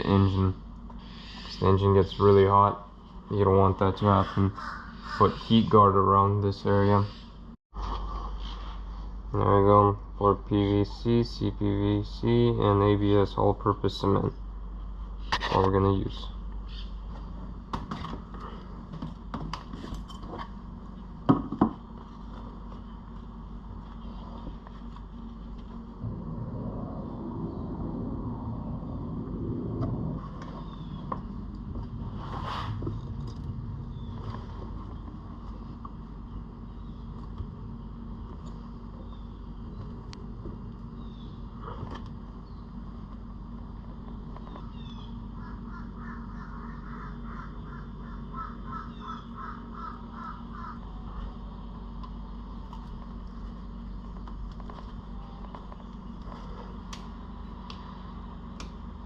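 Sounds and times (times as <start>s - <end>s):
low background hum: 0.0s - 59.0s
bird calling: 1.0s - 2.4s, 3.9s - 6.0s, 16.6s - 17.0s, 30.3s - 31.4s, 44.4s - 51.5s
low rumble: 22.2s - 49.4s.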